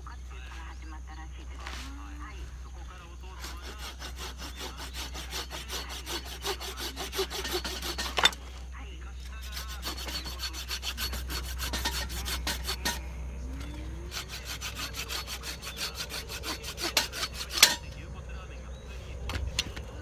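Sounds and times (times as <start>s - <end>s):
hand saw cutting wood: 3.3s - 8.6s, 9.3s - 18.0s.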